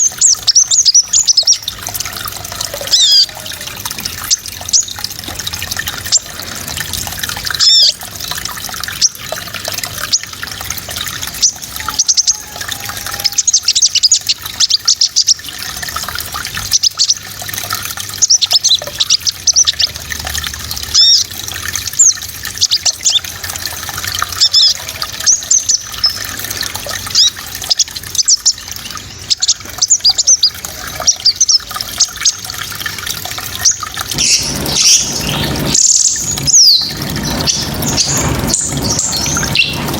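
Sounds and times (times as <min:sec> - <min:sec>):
songbird chirping and trilling: 0:00.0 - 0:05.1, 0:11.4 - 0:15.4, 0:27.1 - 0:32.4, 0:33.6 - 0:39.9
water rushing: 0:00.0 - 0:39.9.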